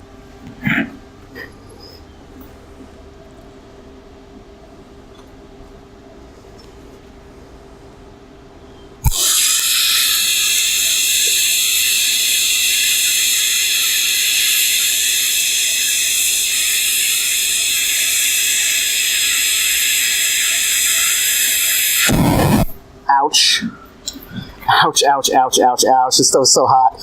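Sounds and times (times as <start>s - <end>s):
welding arc hissing: 9.0s - 22.8s
welding arc snap: 9.0s - 22.8s.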